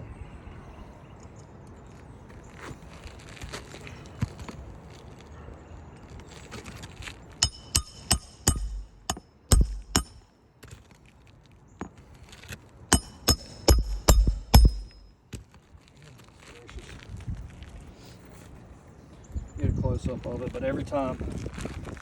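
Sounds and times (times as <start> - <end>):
hammer blows on metal: 7.4 - 10.3, 12.9 - 15.1.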